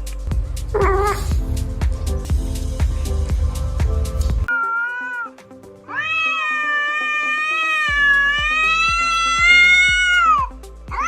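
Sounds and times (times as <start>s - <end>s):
background music with beat: 0.0s - 11.0s
cat meowing: 0.8s - 1.4s, 4.5s - 11.0s.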